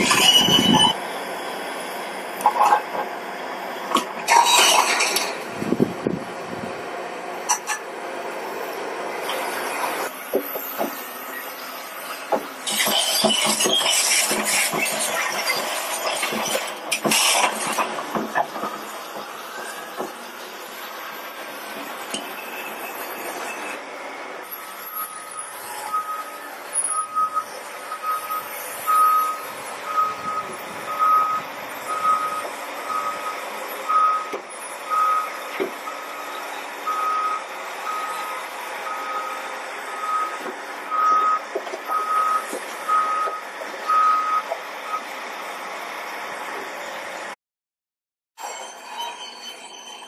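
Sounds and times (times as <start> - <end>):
reversing alarm beeping: 0.0 - 1.0, 24.4 - 45.1
machinery noise: 0.0 - 47.4.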